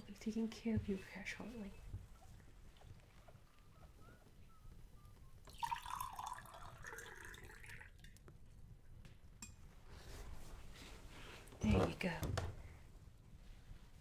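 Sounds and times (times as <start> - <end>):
drink pouring into cup: 5.5 - 8.2.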